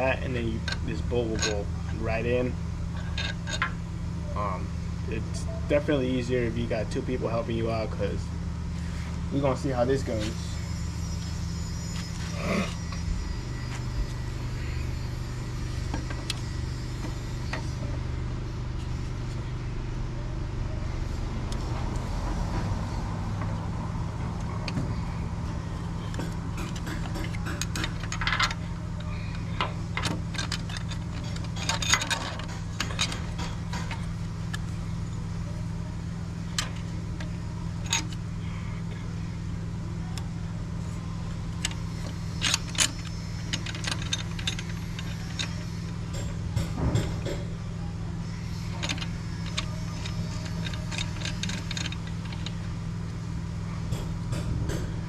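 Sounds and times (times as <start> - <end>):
steady low hum: 0.0 - 55.0
metallic clinks of bolts and tools: 1.4 - 1.6, 3.0 - 3.7, 26.2 - 34.6, 37.8 - 38.2, 41.6 - 47.4, 48.6 - 52.7.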